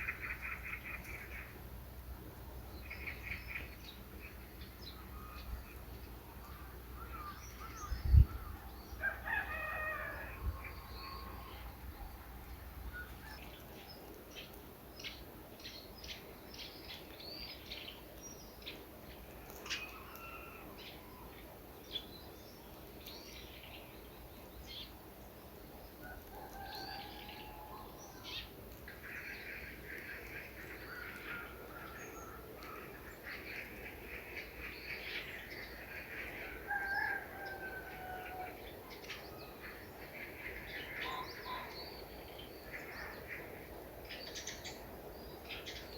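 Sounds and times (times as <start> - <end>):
birds chirping and singing: 2.7 - 18.0, 34.4 - 43.5.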